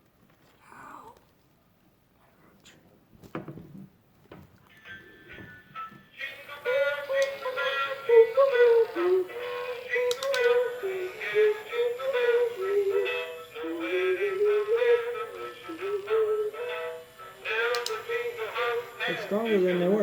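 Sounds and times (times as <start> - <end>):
tinny electronic singing voice: 6.2 - 20.0.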